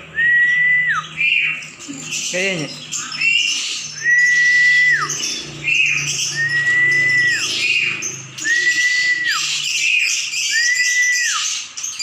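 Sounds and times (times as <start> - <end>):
many birds chirping: 0.0 - 12.0
songbird whistle with downward slur: 8.4 - 9.6, 10.4 - 11.5.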